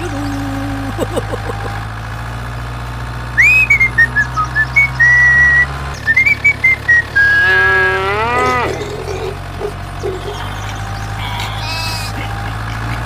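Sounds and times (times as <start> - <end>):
whistled notes: 3.4 - 7.7
long pitched call bending upward: 3.4 - 8.8.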